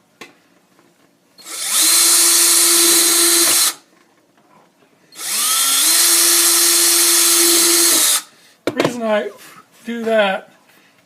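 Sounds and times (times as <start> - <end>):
electric drill drilling plastic: 1.4 - 3.8, 5.2 - 8.3.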